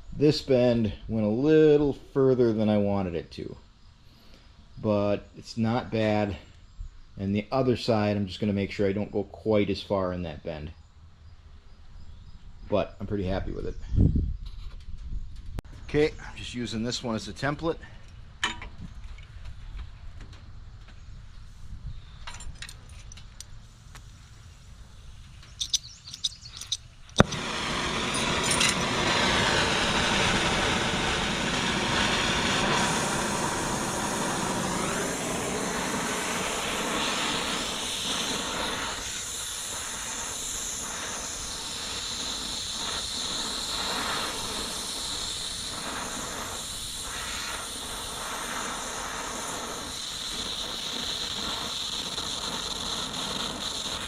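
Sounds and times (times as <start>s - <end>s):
gas torch hissing roar: 27.2s - 54.0s.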